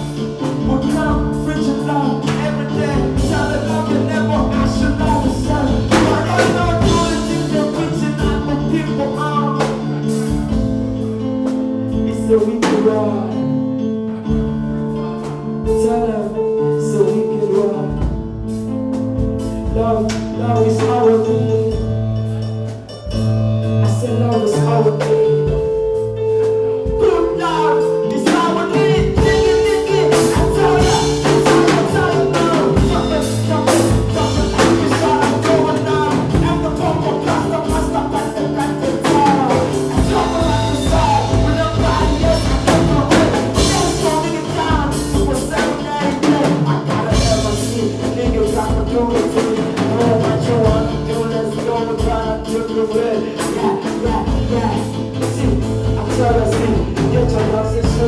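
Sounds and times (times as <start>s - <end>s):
drum kit: 0.0s - 58.0s
live band playing: 0.0s - 58.0s
person singing: 0.1s - 10.3s, 23.1s - 58.0s.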